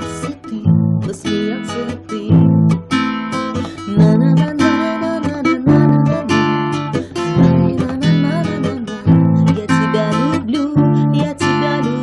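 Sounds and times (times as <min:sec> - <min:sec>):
acoustic guitar strumming chords: 0:00.0 - 0:12.0.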